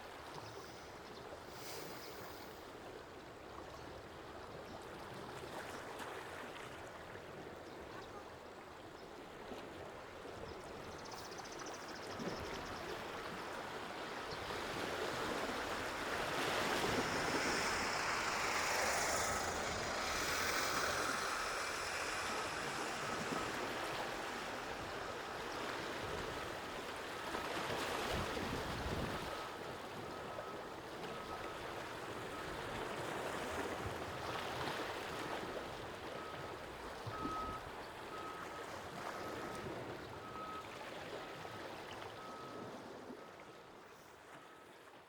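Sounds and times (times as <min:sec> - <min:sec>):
sea water lapping on shore: 0:00.0 - 0:45.0.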